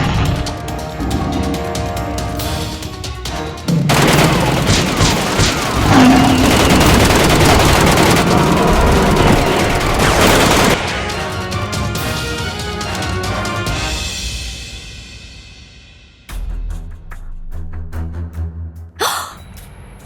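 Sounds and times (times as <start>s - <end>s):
rapid gunfire: 3.8s - 11.6s.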